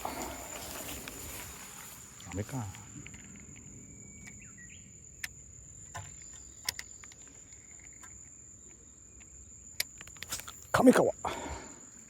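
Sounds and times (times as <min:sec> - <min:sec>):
faint bird chirp: 0:00.0 - 0:09.6
insect trill: 0:00.0 - 0:12.0
sharp clicks: 0:05.2 - 0:08.3.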